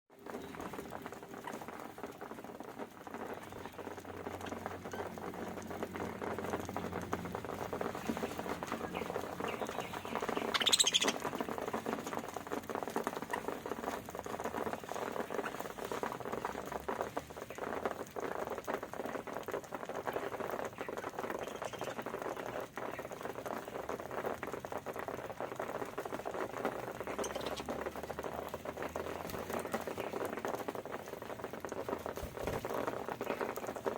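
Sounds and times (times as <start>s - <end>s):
birds pecking and cracking grain: 0.1s - 33.9s
bird chirping: 7.4s - 16.3s, 20.2s - 23.4s, 26.9s - 30.6s.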